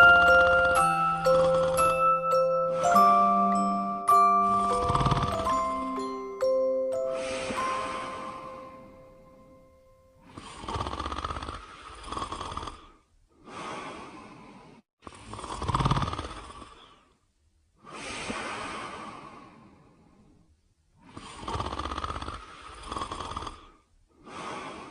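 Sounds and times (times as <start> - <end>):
slow rasping snoring: 0.0 - 3.2, 4.1 - 8.5, 10.2 - 17.2, 21.0 - 24.9
bell-like lullaby note: 0.0 - 10.3.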